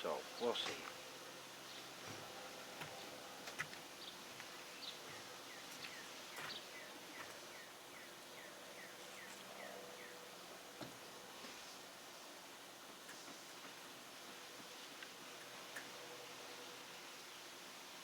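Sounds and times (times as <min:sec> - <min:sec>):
bird chirping: 0:04.0 - 0:10.2.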